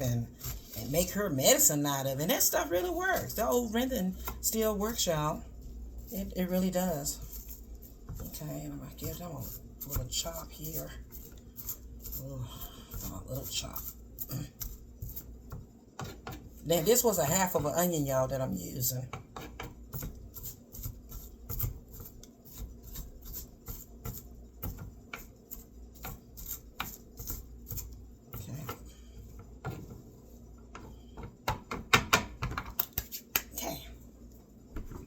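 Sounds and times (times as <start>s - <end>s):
knife chopping on cutting board: 4.1s - 4.5s, 19.1s - 27.9s.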